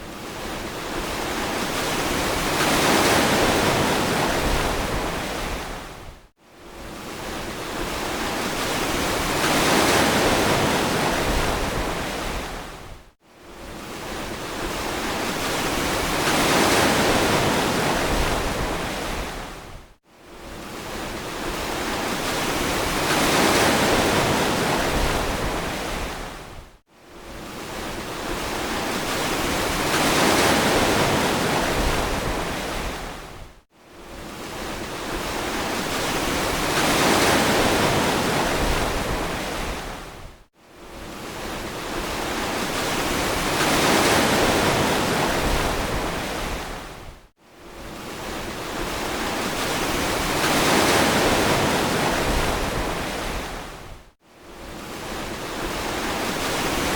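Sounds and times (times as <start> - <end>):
ocean surf washing ashore: 0.0 - 6.1, 6.7 - 13.0, 13.6 - 19.8, 20.4 - 26.6, 27.2 - 56.9.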